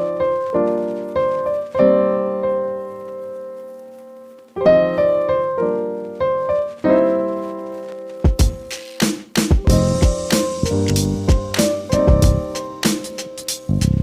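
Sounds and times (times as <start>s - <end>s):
ringtone piano chords: 4.6s - 14.0s.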